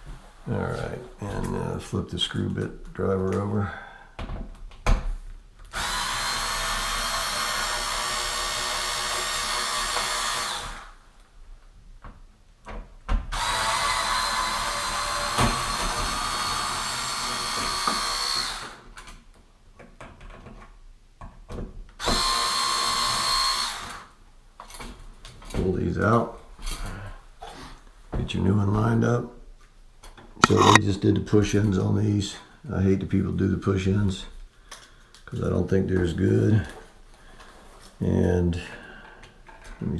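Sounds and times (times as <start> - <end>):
electric screwdriver whine: 30.4 - 30.8.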